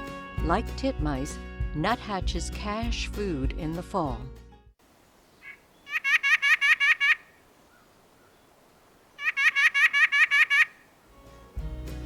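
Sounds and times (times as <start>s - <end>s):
nuthatch nasal song notes: 5.4s - 8.5s, 9.2s - 10.9s.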